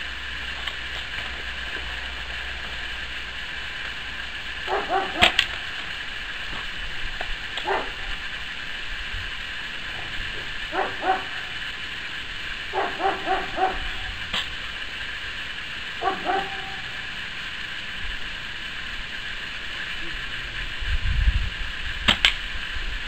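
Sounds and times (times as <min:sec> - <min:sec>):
dog barking: 0:04.7 - 0:05.4, 0:07.6 - 0:08.1, 0:10.7 - 0:11.4, 0:12.7 - 0:14.1, 0:16.0 - 0:16.8.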